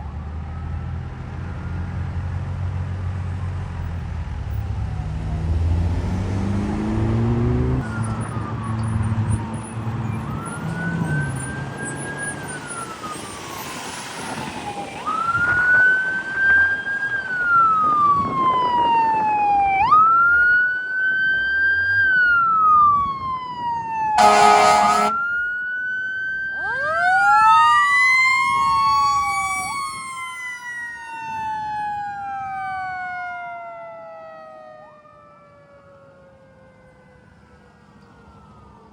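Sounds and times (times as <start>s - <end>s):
sirens wailing: 0.0s - 2.2s, 3.0s - 38.9s
air horn blast: 24.2s - 25.2s.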